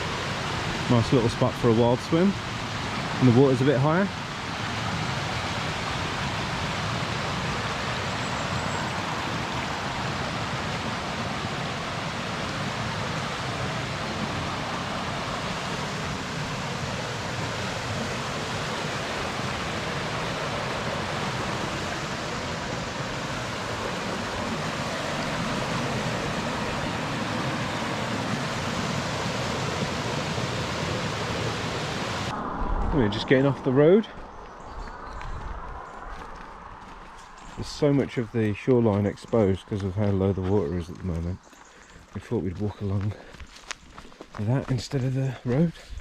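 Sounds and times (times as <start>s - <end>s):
stream water rushing: 0.0s - 33.6s.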